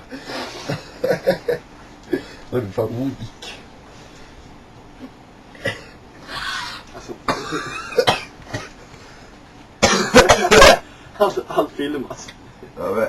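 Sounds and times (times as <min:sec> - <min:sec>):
person coughing: 0:05.6 - 0:06.0, 0:07.2 - 0:08.8, 0:09.8 - 0:10.9.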